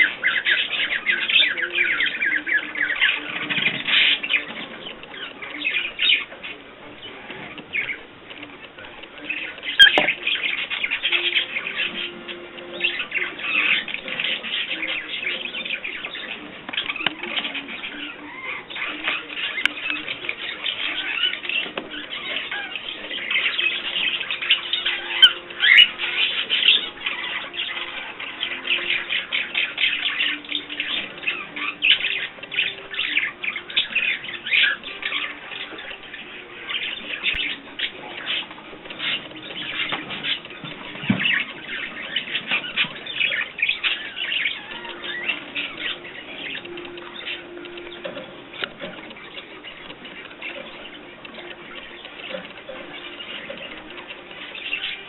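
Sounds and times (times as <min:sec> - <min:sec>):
small birds chirping: 0:00.0 - 0:55.0.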